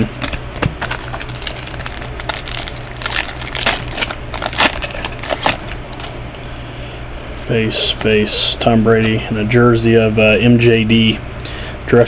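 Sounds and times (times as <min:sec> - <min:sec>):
trading cards rustling and clicking: 0:00.2 - 0:06.2.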